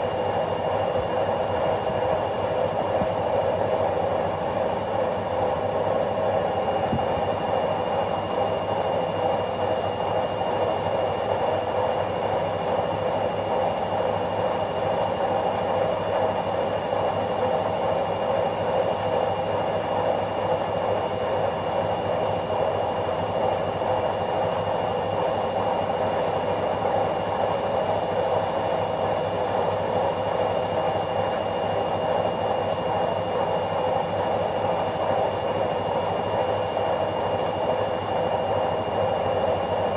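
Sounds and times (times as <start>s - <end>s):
faint high whine: 0.0s - 14.3s
washing machine drone: 0.0s - 39.9s.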